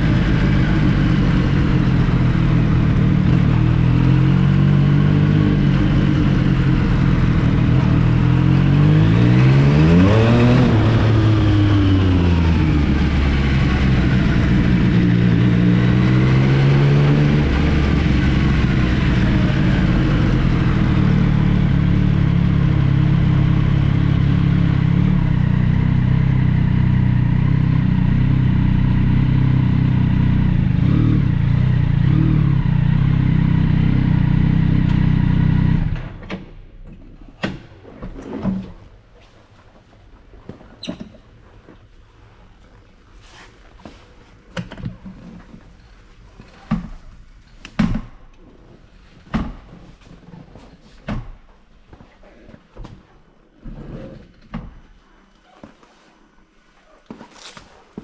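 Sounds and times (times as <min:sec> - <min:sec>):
motorcycle engine revving: 0:00.0 - 0:36.2.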